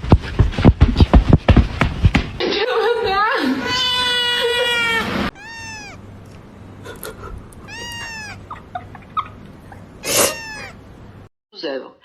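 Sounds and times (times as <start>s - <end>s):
cat meowing: 4.0s - 6.1s, 7.6s - 8.5s, 10.0s - 10.8s.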